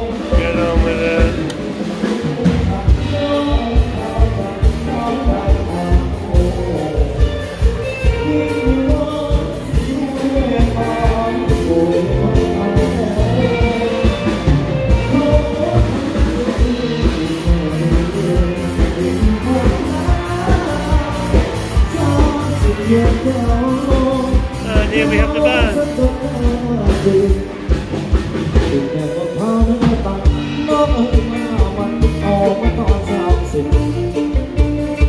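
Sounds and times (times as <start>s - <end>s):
steady drum beat: 0.0s - 3.2s, 23.7s - 26.0s
band playing with singer: 0.0s - 35.0s.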